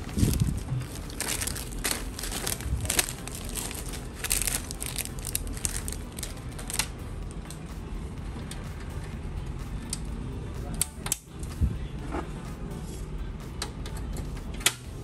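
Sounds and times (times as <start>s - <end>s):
plastic crinkling: 0.0s - 6.9s.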